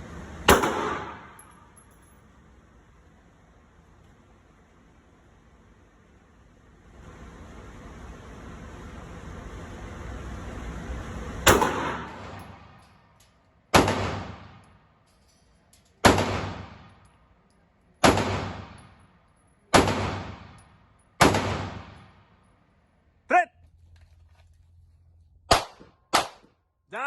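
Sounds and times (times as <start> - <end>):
echoing gunshots: 0.5 - 1.6, 11.4 - 12.8, 13.7 - 14.7, 16.0 - 17.0, 18.0 - 18.9, 19.7 - 22.2, 25.5 - 26.5.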